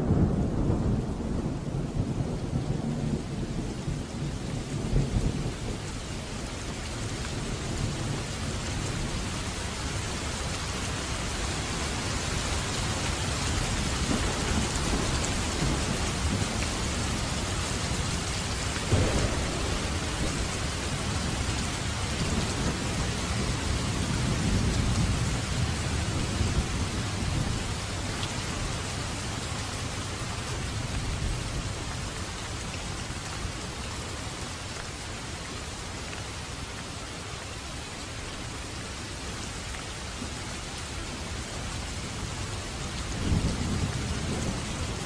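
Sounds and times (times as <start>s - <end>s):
low rumbling thunder: 0.0s - 9.3s, 13.2s - 32.7s, 42.1s - 45.0s
heavy rain falling: 0.0s - 45.0s
sharp thunder clap: 18.9s - 21.4s.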